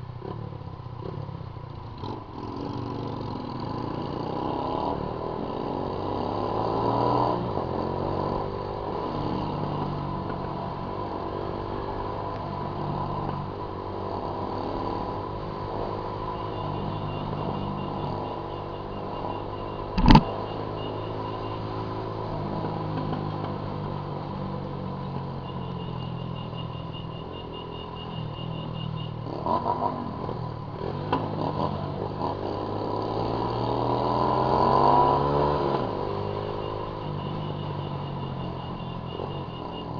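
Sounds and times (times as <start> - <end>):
motorcycle engine running: 19.9 - 20.3.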